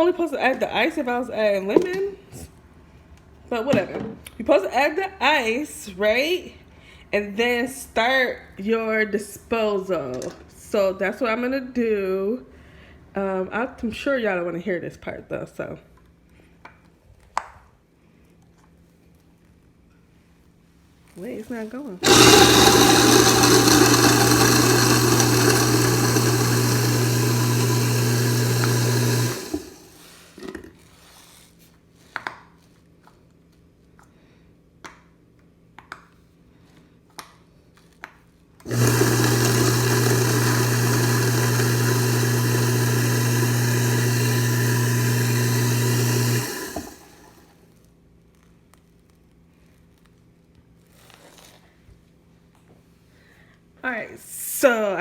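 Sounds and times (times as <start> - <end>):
garbage disposal grinding ice: 22.0 - 30.8, 38.7 - 47.4.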